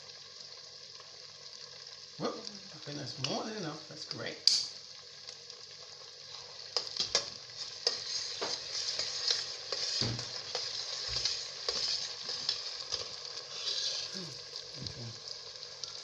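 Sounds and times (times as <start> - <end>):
food sizzling in oil: 0.0 - 16.0.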